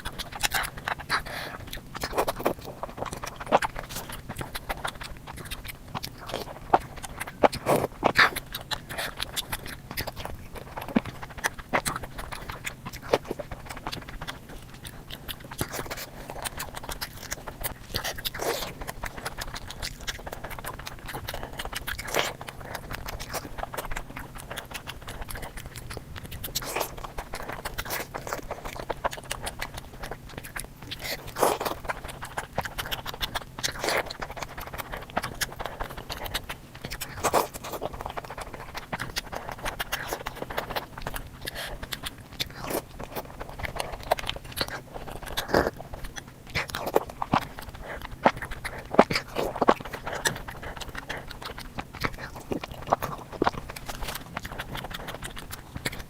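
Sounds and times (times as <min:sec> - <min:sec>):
chewing sweets: 0:00.0 - 0:56.0
faint steady hum: 0:00.0 - 0:56.0.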